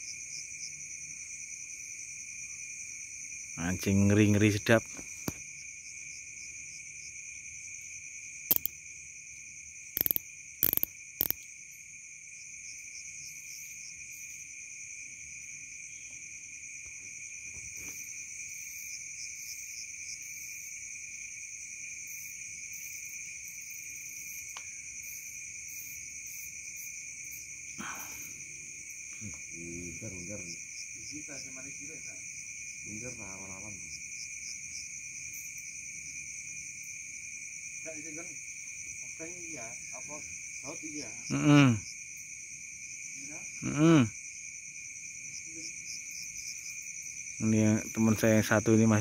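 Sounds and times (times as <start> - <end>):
crickets trilling: 0.0 - 49.0
sharp clicks or knocks: 8.5 - 8.7, 10.0 - 11.4.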